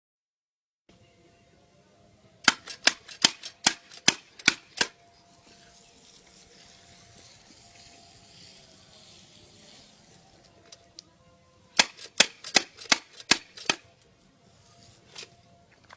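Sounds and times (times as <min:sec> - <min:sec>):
faint steady hiss: 0:04.6 - 0:12.5, 0:13.2 - 0:15.9.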